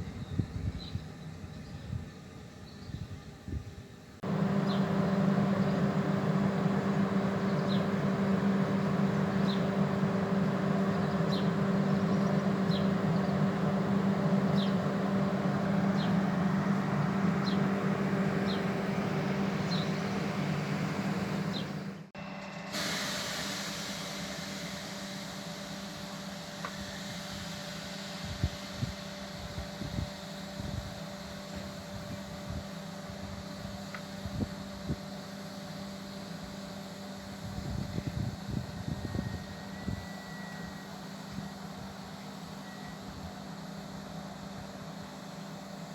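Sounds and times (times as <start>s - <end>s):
background hum: 0.0s - 22.1s
train humming: 3.4s - 34.8s.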